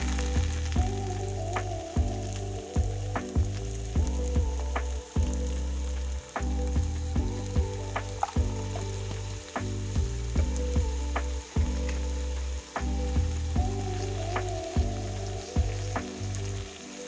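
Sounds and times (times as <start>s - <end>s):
background music with bass line: 0.0s - 17.0s
food sizzling in a pan: 0.0s - 17.0s.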